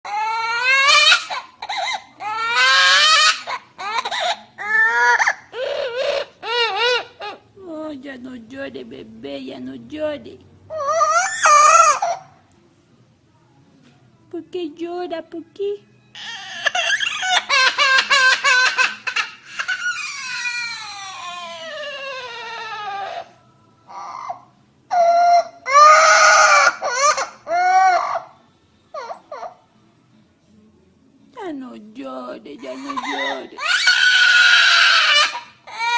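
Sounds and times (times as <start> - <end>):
parrot mimicking baby crying: 0.0 - 7.5, 10.7 - 12.4, 16.2 - 29.6, 32.6 - 35.9.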